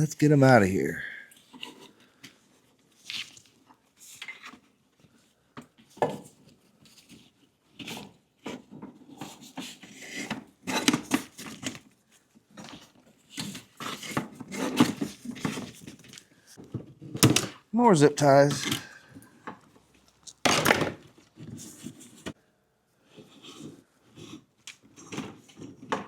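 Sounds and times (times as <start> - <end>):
plastic canisters clicking and rattling: 7.8 - 11.9, 12.6 - 17.7.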